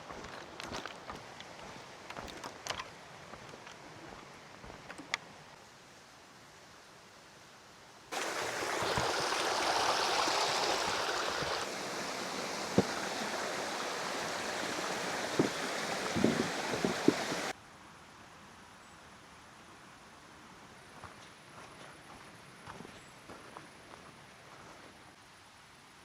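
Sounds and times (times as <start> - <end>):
water rushing: 8.1 - 17.6.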